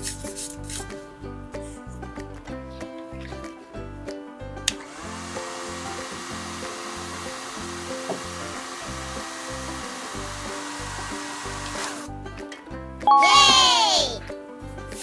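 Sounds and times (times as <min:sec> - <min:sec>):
hair dryer blowing: 0:04.9 - 0:08.8.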